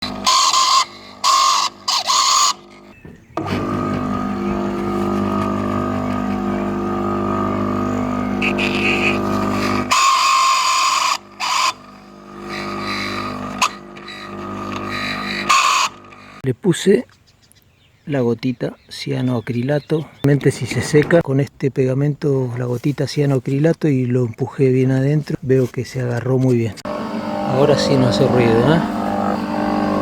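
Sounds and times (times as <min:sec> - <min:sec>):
pool pump motor humming: 0:00.0 - 0:16.4, 0:26.6 - 0:30.0.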